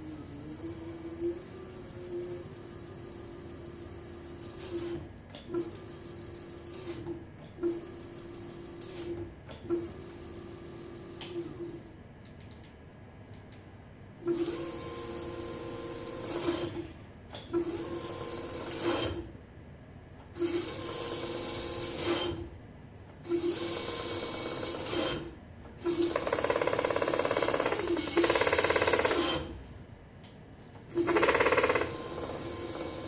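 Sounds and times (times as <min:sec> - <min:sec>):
small motor running: 0:25.9 - 0:29.4, 0:31.0 - 0:33.0.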